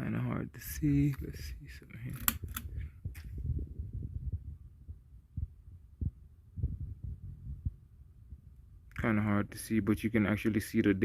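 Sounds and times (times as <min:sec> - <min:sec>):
muffled handling bumps and rumble: 0:01.0 - 0:08.6.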